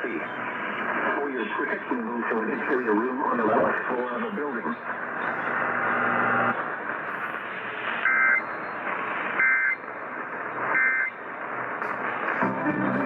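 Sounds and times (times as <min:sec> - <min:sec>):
radio hiss: 0:00.0 - 0:13.0.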